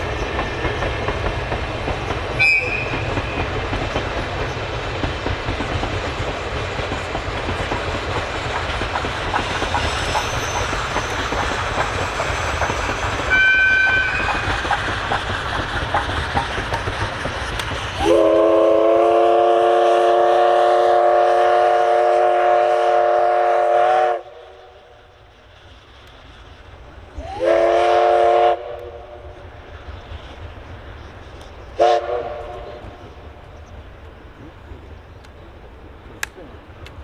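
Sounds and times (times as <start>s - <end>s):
train rattling over rail joints: 0.0s - 37.0s
steam locomotive whistle: 2.3s - 3.6s, 12.2s - 14.8s, 17.9s - 25.0s, 27.2s - 29.4s, 31.8s - 33.0s.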